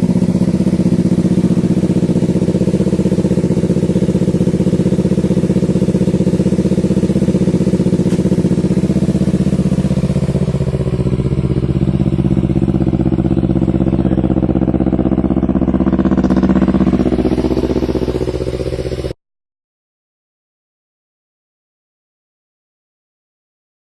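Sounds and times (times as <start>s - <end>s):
motorcycle engine idling: 0.0s - 19.2s.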